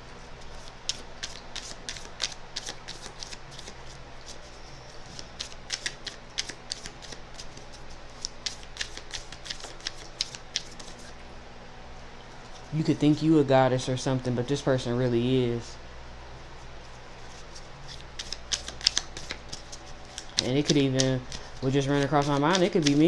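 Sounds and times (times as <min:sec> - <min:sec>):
cards being shuffled: 0:00.4 - 0:11.1, 0:16.9 - 0:23.0.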